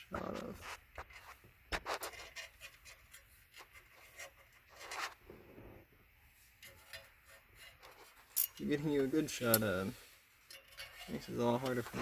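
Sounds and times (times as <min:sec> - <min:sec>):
rustle: 0:00.0 - 0:12.0
tool clicking and scraping on screw: 0:10.5 - 0:12.0.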